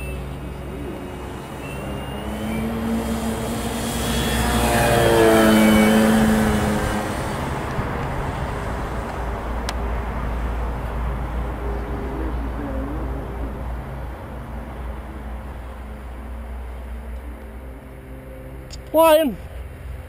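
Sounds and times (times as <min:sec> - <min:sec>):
model plane motor: 0:02.4 - 0:08.0.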